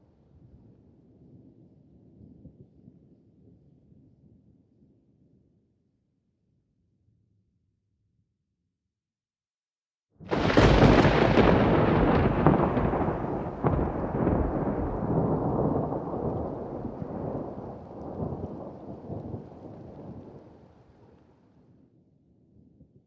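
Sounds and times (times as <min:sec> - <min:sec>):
thunder clap and rumble: 0:10.3 - 0:20.7.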